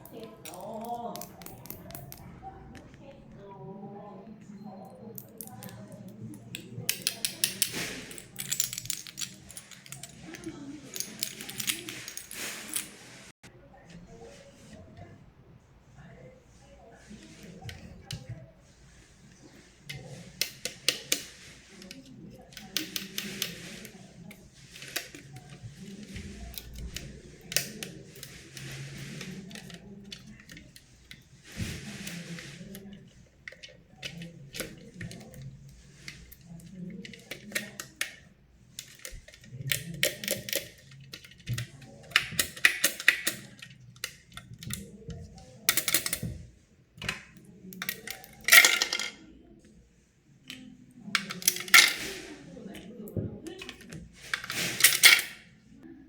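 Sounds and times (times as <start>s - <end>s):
plastic toy pieces clicking: 0.0s - 2.2s, 38.8s - 44.9s.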